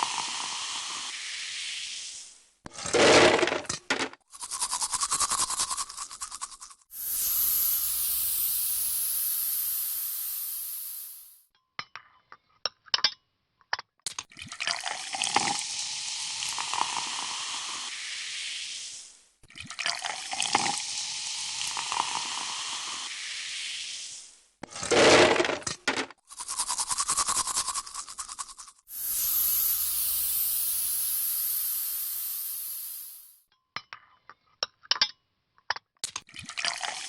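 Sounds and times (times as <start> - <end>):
air hissing out: 6.9 - 11.4, 28.9 - 33.4
sharp clinks: 7.0 - 11.4, 28.9 - 33.4.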